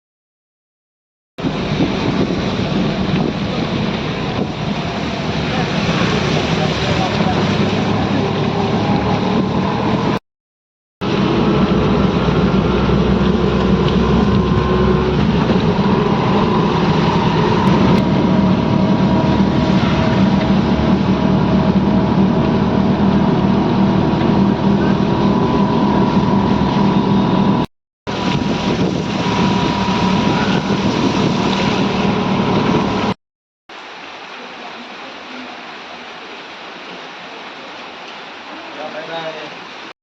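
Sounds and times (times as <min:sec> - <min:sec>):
engine running: 0:01.4 - 0:10.2, 0:11.0 - 0:33.2
loud rushing noise: 0:01.4 - 0:10.2, 0:11.0 - 0:33.2.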